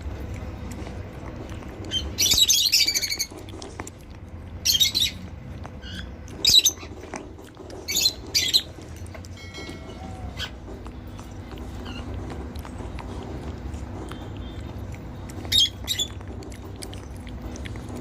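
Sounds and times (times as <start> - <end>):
low steady hum: 0.0 - 18.0
parrot chirping harshly: 1.9 - 3.5, 4.6 - 7.0, 7.8 - 8.8, 15.5 - 16.2.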